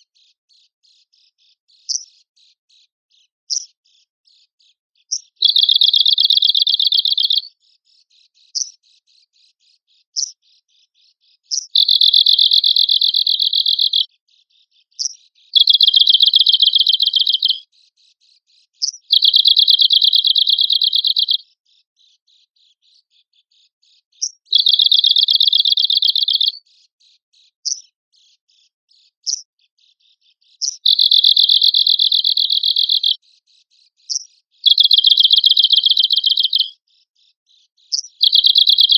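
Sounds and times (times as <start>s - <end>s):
bird trilling: 1.9s - 2.1s, 5.1s - 7.5s, 11.5s - 14.1s, 15.0s - 17.6s, 18.8s - 21.4s, 24.2s - 26.6s, 30.6s - 33.2s, 34.1s - 36.8s, 37.9s - 38.9s
bird call notes: 11.8s - 14.0s, 15.6s - 17.6s, 30.7s - 33.2s, 34.6s - 36.8s, 38.2s - 38.9s.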